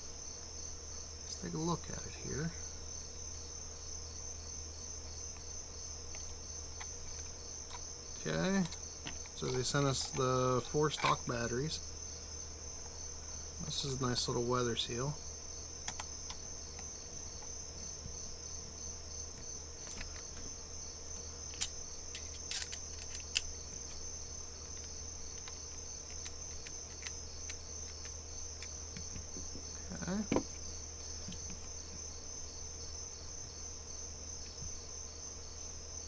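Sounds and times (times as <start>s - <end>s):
crickets trilling: 0.0s - 36.0s
plastic parts clicking: 21.5s - 23.5s, 24.8s - 29.3s.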